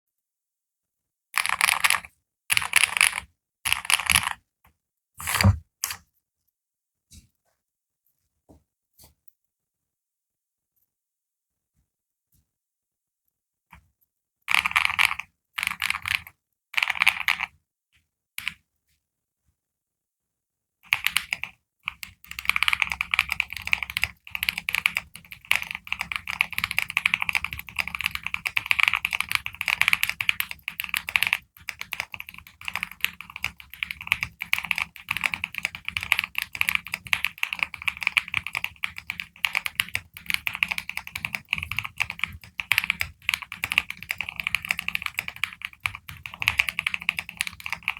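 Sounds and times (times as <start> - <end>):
mechanical keyboard typing: 1.4 - 4.4, 14.5 - 17.5, 20.9 - 47.9.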